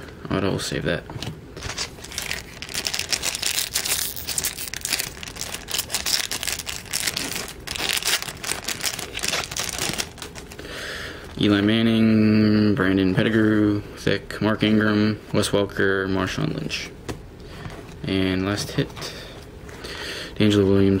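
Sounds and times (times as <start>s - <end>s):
foil wrapper tearing and crinkling: 1.6s - 10.7s.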